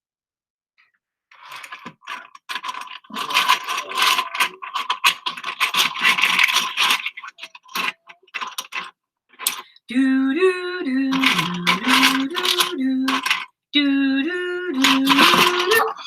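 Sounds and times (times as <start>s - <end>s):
plastic bricks clattering: 1.3s - 9.7s, 11.1s - 13.5s, 14.8s - 16.0s.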